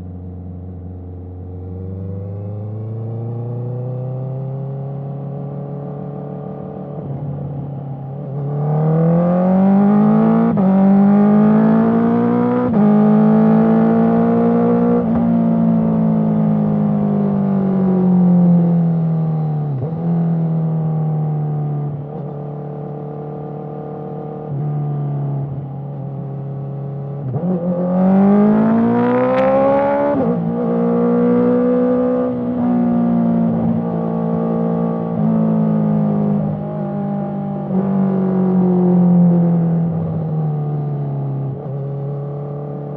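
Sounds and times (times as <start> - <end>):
motorcycle engine accelerating: 25.9 - 42.9.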